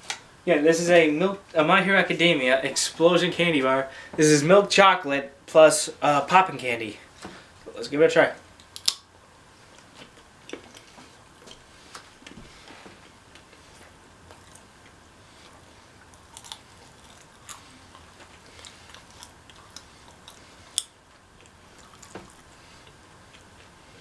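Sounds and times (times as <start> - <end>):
chewing chocolate: 16.0 - 24.0.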